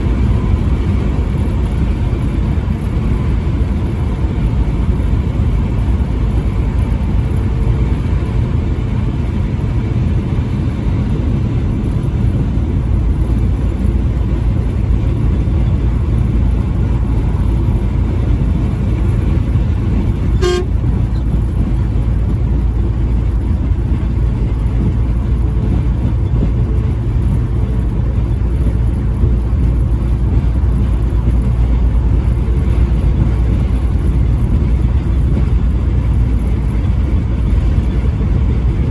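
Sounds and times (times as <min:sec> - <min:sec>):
vehicle rumble: 0:00.0 - 0:38.9
faint horn tone: 0:20.3 - 0:21.0.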